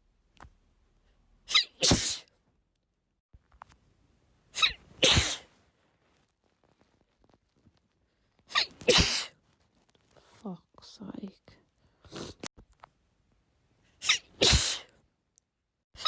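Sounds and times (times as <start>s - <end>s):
woman sneezing: 1.5s - 2.3s, 4.6s - 5.5s, 8.5s - 9.3s, 14.0s - 14.9s.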